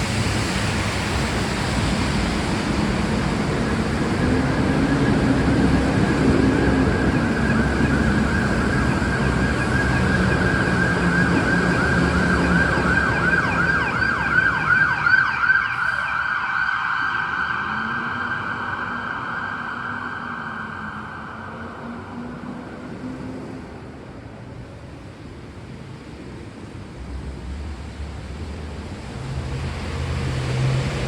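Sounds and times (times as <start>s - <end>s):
emergency vehicle siren: 1.5s - 24.0s.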